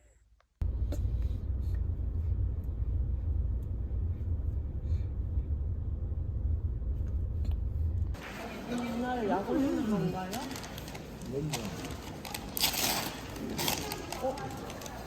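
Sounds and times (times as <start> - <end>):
road and engine rumble in car: 0.6 - 8.2.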